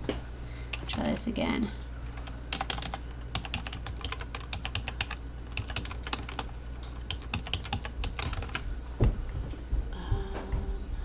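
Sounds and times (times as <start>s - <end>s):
typing on computer keyboard: 2.2s - 8.6s.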